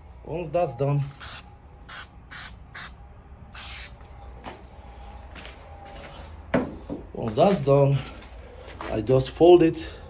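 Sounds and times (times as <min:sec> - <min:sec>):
aerosol can spraying: 0:01.2 - 0:02.9, 0:03.6 - 0:03.9.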